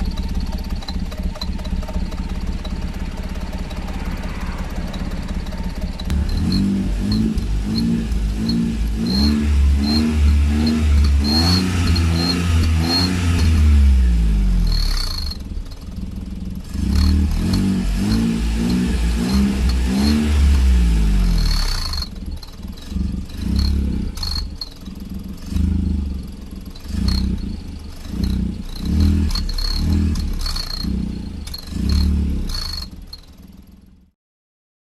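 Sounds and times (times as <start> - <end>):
car engine revving: 0.0 - 33.9
exhaust turbo whistle: 1.4 - 13.5.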